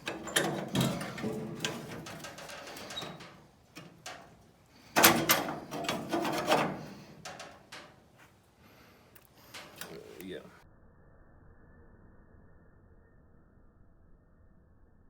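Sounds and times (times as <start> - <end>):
sheet metal knocking and clattering: 0.0 - 8.0.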